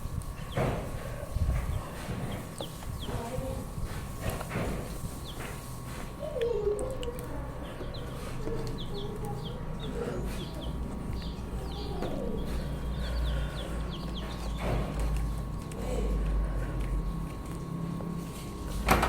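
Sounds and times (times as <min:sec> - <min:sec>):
faint steady hum: 0:00.0 - 0:19.0
chicks peeping: 0:00.1 - 0:18.0.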